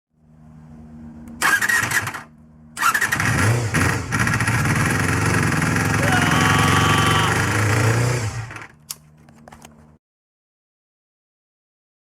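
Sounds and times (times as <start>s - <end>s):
motorcycle engine starting and running: 1.2s - 9.7s.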